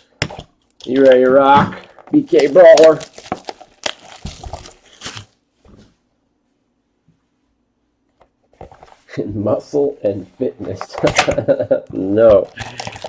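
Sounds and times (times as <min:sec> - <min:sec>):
foil wrapper tearing and crinkling: 0:02.2 - 0:05.4, 0:12.5 - 0:13.0.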